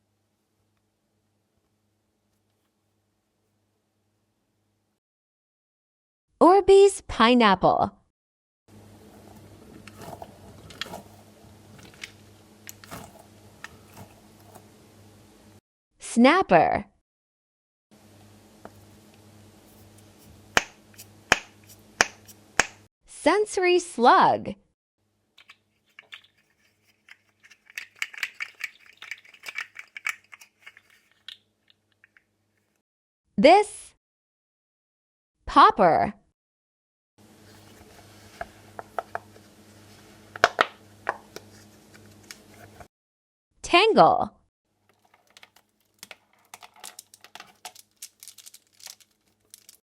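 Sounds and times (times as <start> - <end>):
squeeze toy clicking and crackling: 44.9 - 49.8.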